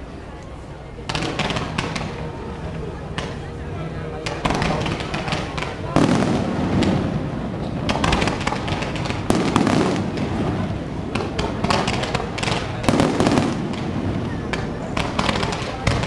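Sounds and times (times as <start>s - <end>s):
firework crackling: 4.2s - 16.0s
firework shells bursting: 7.9s - 14.0s.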